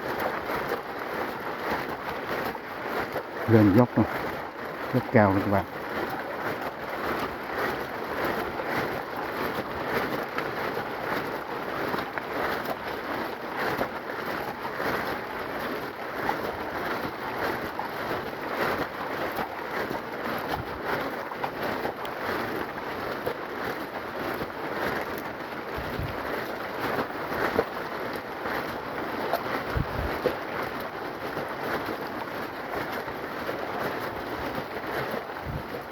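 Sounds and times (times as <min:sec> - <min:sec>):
steady rain falling: 0:00.0 - 0:35.9.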